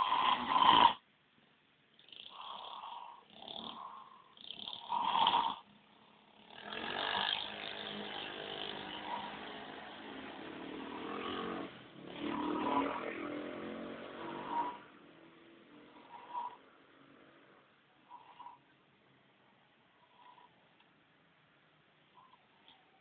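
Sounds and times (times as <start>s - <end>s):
person snoring: 0.0s - 1.0s, 2.1s - 15.0s, 15.8s - 16.8s, 18.0s - 18.7s, 20.0s - 20.6s.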